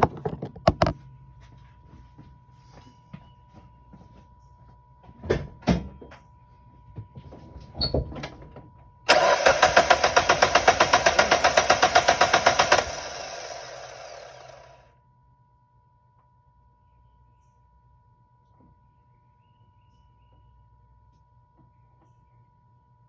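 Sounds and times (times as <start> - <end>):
engine cranking by starter: 9.1 - 14.8.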